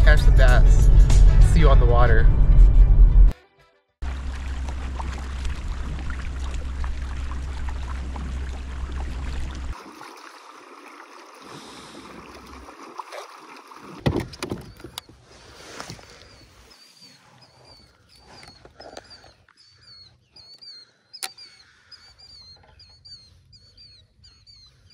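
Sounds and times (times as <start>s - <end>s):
heavy low rumble: 0.0s - 3.3s
water splashing around a kayak: 4.0s - 19.1s.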